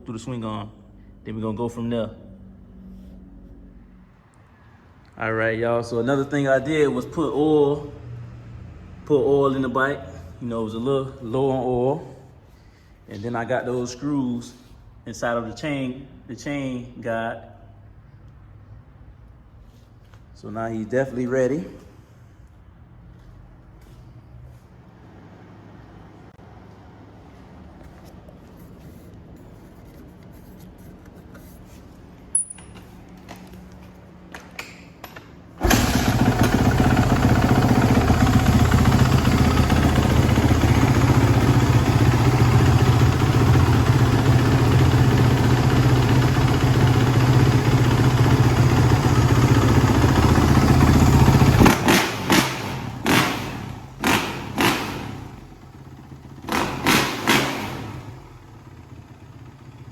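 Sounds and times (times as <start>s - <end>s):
engine knocks: 35.6s - 55.3s
engine throttle blips: 35.6s - 59.8s
motorcycle engine running: 35.6s - 59.9s.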